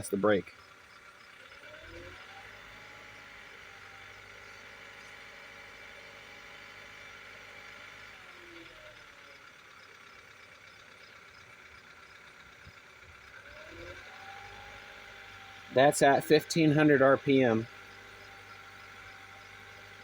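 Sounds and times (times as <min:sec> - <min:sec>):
car engine running: 0:00.0 - 0:20.0
engine ticking knock: 0:09.5 - 0:20.0.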